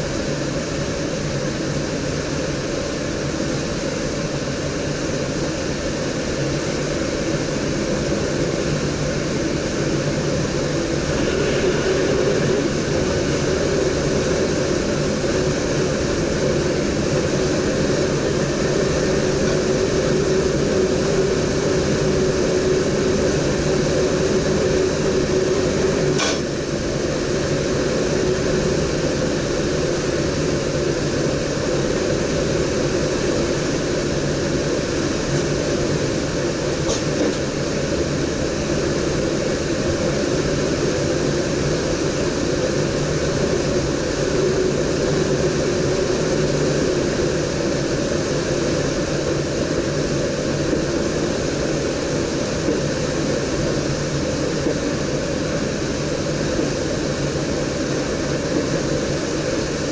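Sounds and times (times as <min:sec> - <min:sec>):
steady whine: 0:00.0 - 0:59.9
train running rumble and hiss: 0:00.0 - 0:59.9
sharp click: 0:26.2 - 0:26.5.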